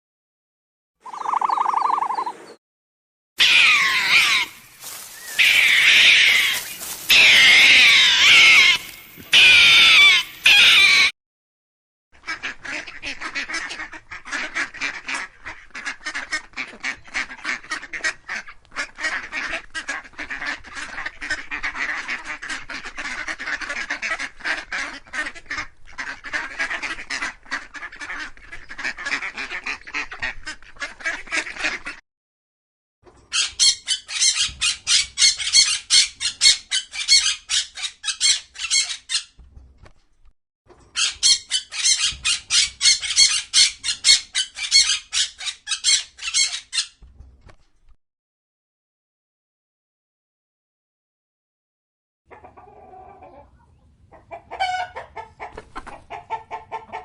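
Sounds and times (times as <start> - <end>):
ducks quacking: 3.4 - 11.1, 12.2 - 32.0, 54.1 - 57.0
geese honking: 3.4 - 11.1.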